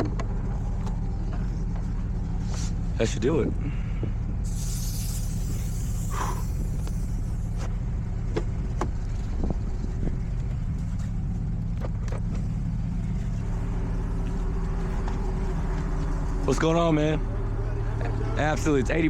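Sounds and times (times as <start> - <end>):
vehicle engine idling: 0.0 - 19.0
hiss: 4.4 - 7.6.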